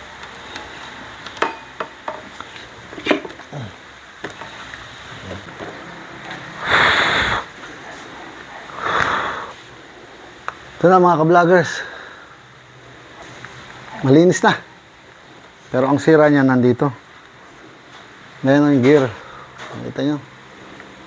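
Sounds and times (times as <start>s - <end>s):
fan parts clicking and knocking: 0.0s - 3.5s, 4.2s - 6.5s, 18.7s - 20.0s
loud hissing bursts: 6.5s - 8.0s, 8.6s - 9.8s.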